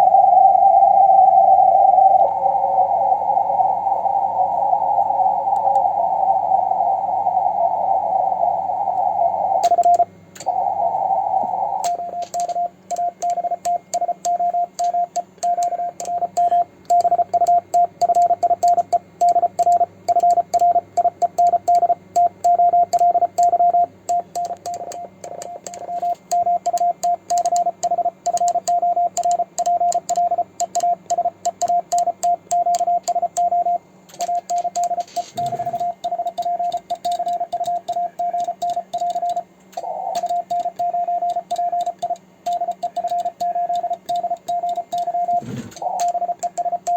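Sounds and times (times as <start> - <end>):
morse code sidetone beeping: 9.5 - 10.7, 11.8 - 46.9
radio band noise hiss: 35.0 - 36.0, 45.3 - 46.1.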